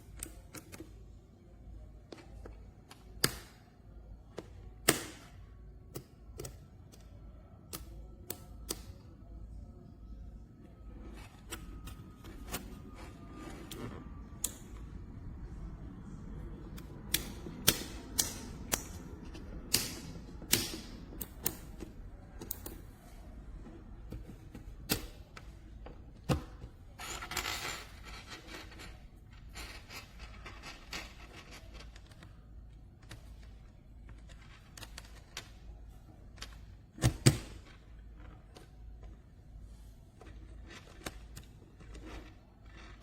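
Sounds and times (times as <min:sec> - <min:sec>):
toggle switches clicking: 0:16.7 - 0:19.1, 0:19.7 - 0:22.8.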